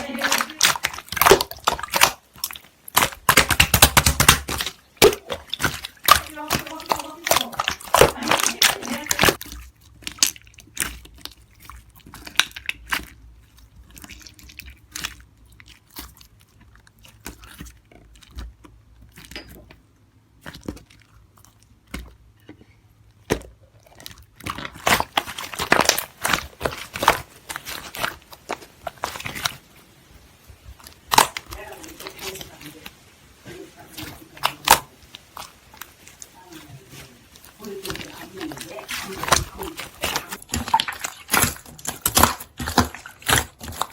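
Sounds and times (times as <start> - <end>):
slime squishing with crunchy pops: 0.0 - 43.9.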